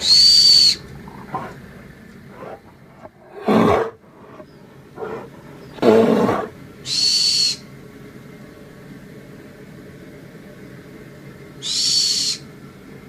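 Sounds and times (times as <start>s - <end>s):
bear growling: 0.6s - 6.6s.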